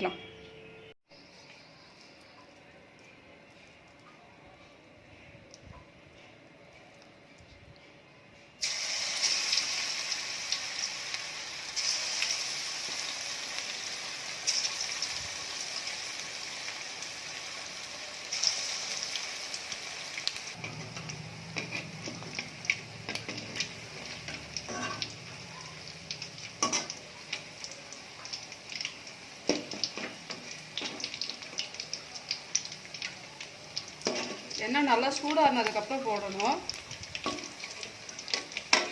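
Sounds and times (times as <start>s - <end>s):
hot oil sizzling in a pan: 8.6s - 38.9s.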